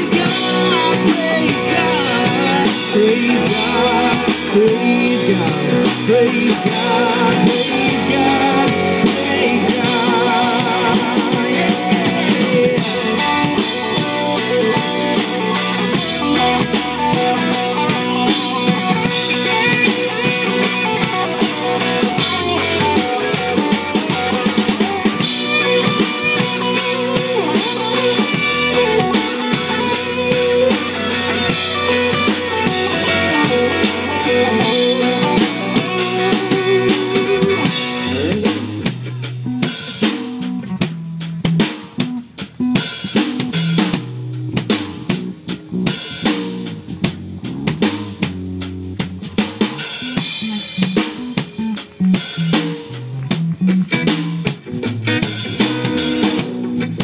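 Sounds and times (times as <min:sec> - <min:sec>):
live band playing: 0:00.0 - 0:57.0.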